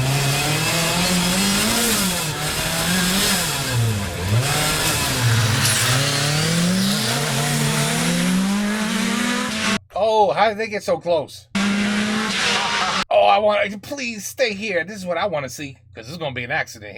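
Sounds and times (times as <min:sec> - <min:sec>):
rally car engine revving: 0:00.0 - 0:09.8, 0:11.5 - 0:13.1.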